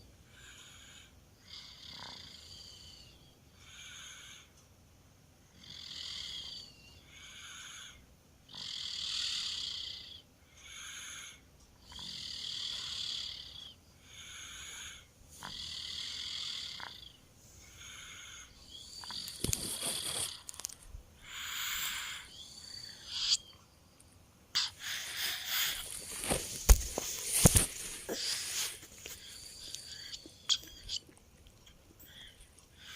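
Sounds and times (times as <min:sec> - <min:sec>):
child snoring: 0:00.3 - 0:04.5, 0:05.5 - 0:20.5, 0:21.2 - 0:23.4, 0:24.6 - 0:26.4, 0:27.4 - 0:31.1
rustling: 0:19.2 - 0:20.9, 0:24.8 - 0:30.1.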